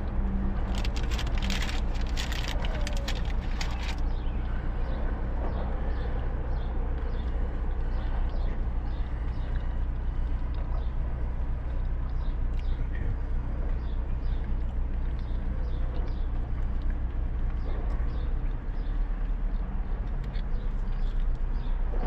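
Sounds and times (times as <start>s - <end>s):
car engine idling: 0.0s - 10.2s.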